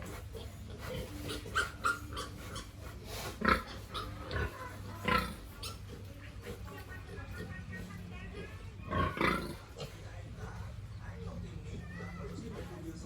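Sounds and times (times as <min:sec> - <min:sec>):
pigs making short calls: 0:00.0 - 0:06.7, 0:08.4 - 0:10.0.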